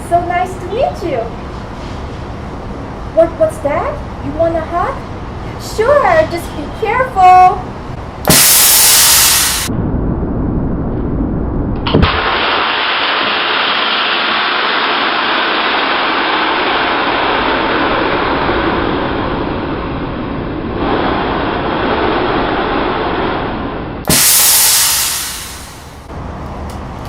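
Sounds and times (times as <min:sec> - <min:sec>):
compressed gas hissing: 0:08.2 - 0:09.7, 0:12.0 - 0:19.4, 0:24.0 - 0:26.1
low muffled rumble: 0:09.5 - 0:15.0, 0:15.6 - 0:24.1.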